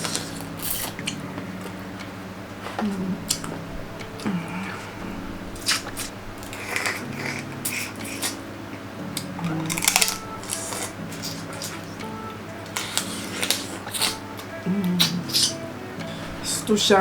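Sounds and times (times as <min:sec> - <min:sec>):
chewing and squishing: 0:00.0 - 0:01.8, 0:05.6 - 0:08.4, 0:09.2 - 0:12.0, 0:12.6 - 0:15.6
shellfish and utensil clicks: 0:09.1 - 0:15.6.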